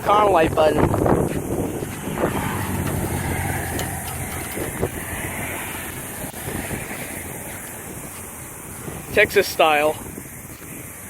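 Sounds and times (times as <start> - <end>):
vehicle rumbling past: 1.1 - 8.1.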